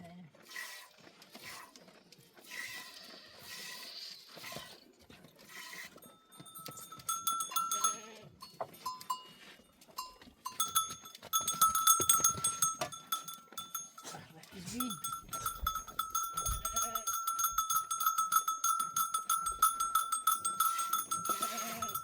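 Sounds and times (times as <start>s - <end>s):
animal bells clinking: 5.7s - 22.0s
sheep and goats bleating: 6.7s - 8.9s, 10.5s - 13.9s, 14.6s - 19.2s, 20.4s - 22.0s.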